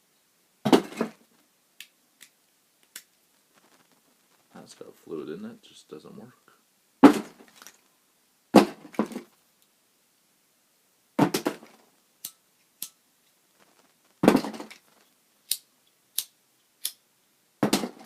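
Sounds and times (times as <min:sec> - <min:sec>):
lighter clicks: 0:15.5 - 0:17.0.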